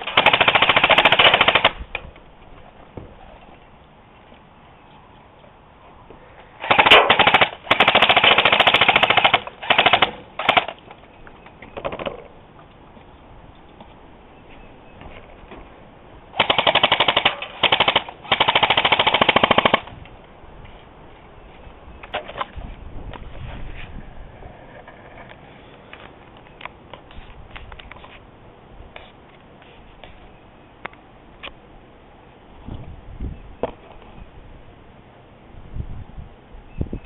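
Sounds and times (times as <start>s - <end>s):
airsoft guns firing bursts: 0.0s - 1.8s, 6.6s - 10.8s, 16.3s - 19.9s.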